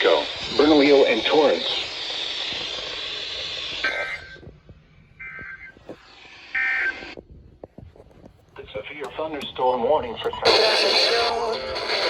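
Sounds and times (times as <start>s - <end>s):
radio hiss: 0.0s - 12.0s
screeching digital data bursts: 5.2s - 7.2s, 10.4s - 12.0s.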